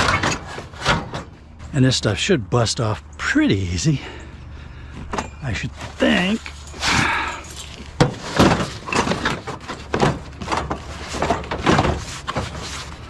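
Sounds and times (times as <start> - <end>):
scrap metal knocks and clanks: 0.0 - 1.7, 4.9 - 13.0.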